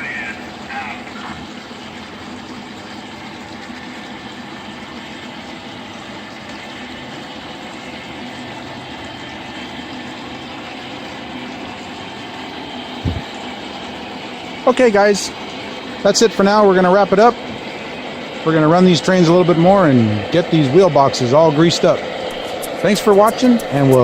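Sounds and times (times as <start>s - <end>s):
model train motor hum: 0.0s - 24.0s.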